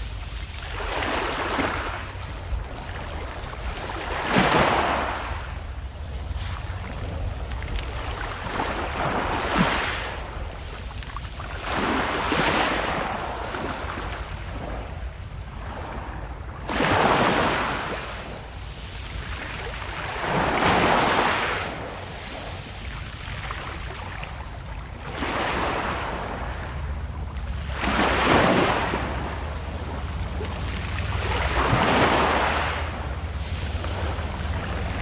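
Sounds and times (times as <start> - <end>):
low surf rumble: 0.0 - 10.8, 21.5 - 35.0
sea waves breaking: 0.0 - 35.0.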